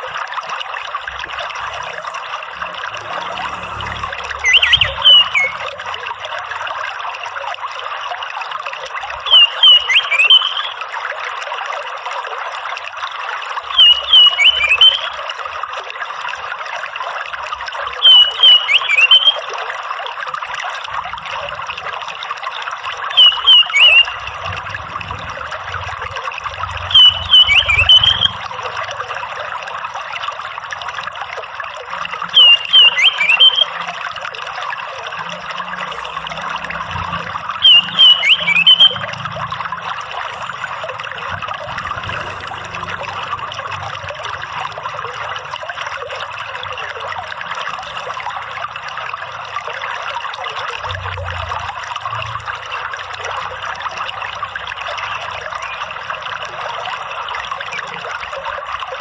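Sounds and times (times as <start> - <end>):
water trickling: 0.0 - 59.0
bird song: 3.4 - 5.7, 9.2 - 10.8, 13.7 - 15.2, 18.0 - 19.4, 23.1 - 24.6, 26.8 - 28.5, 32.2 - 33.9, 36.9 - 39.2.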